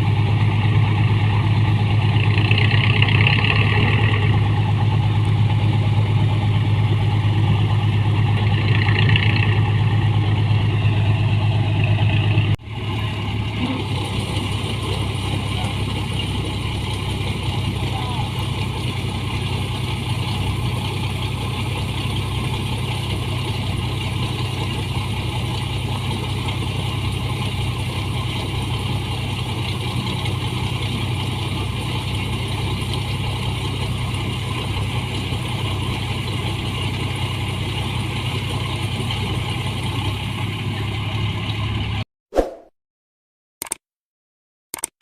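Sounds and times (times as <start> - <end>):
combine harvester engine running: 0.0 - 42.0.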